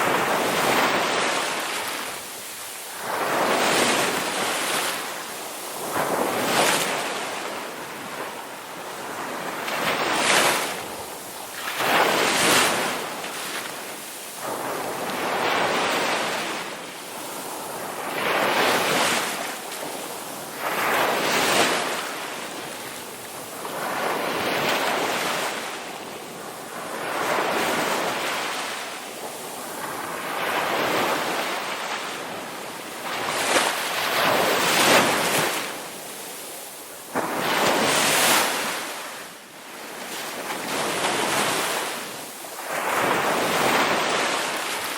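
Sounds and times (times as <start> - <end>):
ocean waves crashing: 0.0 - 44.9.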